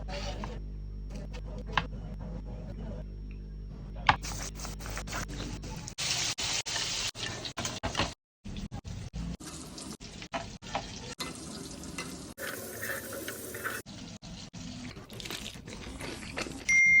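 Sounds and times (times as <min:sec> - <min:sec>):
hot oil sizzling: 0:06.0 - 0:07.7, 0:09.4 - 0:15.0.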